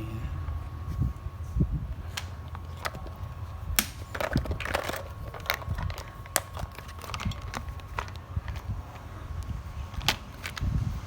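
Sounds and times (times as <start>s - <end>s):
laptop plastic parts clicking: 3.8s - 8.7s.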